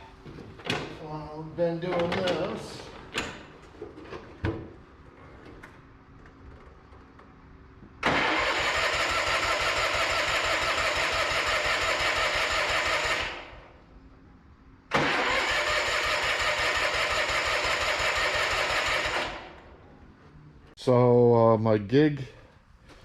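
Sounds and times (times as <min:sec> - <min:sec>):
electric starter cranking engine: 0:08.0 - 0:13.6, 0:14.9 - 0:19.7.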